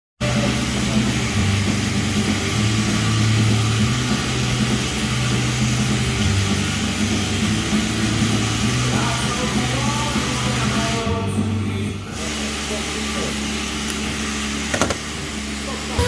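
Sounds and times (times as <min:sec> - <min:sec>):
diesel engine running: 0:00.2 - 0:16.0
turbocharger hiss: 0:00.2 - 0:16.0.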